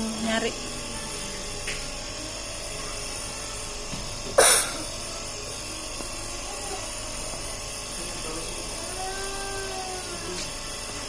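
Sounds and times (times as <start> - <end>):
mechanical hum with high tones: 0.0 - 11.0.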